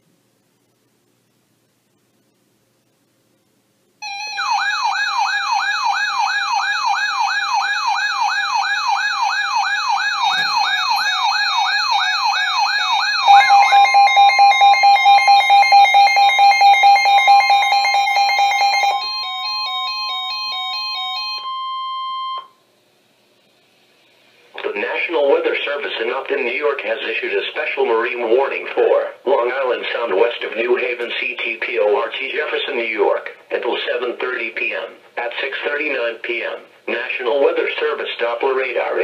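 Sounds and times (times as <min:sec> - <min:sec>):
wailing electronic siren: 0:04.0 - 0:22.5
high beeps: 0:12.8 - 0:19.2.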